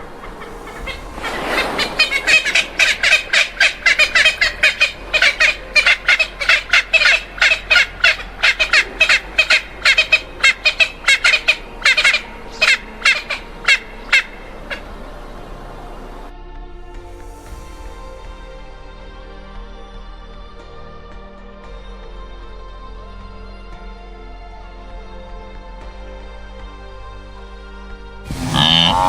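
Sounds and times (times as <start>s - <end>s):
bird squawking: 0.0s - 16.3s, 28.3s - 29.0s.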